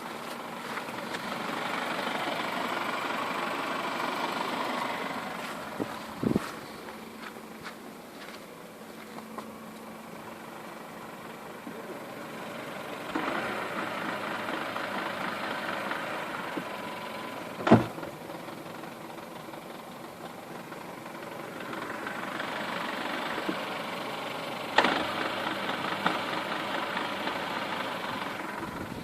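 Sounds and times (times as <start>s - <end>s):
car engine idling: 0.0s - 29.0s.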